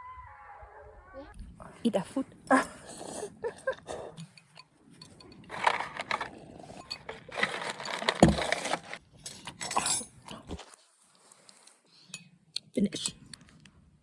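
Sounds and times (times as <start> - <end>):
utensils clinking on bowls: 4.2 - 10.2
rustling: 4.8 - 9.0.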